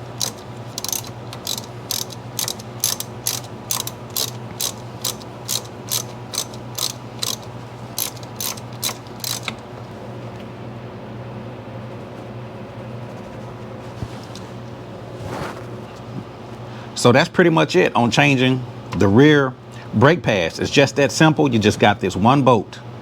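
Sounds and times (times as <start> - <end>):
ratchet clicking: 0.0 - 9.7.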